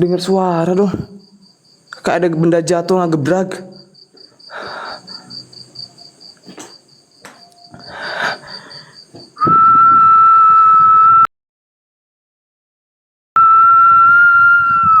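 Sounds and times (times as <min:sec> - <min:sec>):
crickets chirping: 0:00.0 - 0:11.1
loud steady whistle-like tone: 0:07.3 - 0:11.3, 0:13.4 - 0:15.0.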